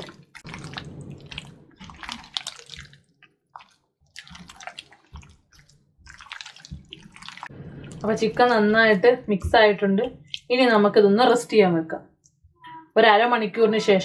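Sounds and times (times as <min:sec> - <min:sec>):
wet squelching of meat in marinade: 0:00.0 - 0:10.8.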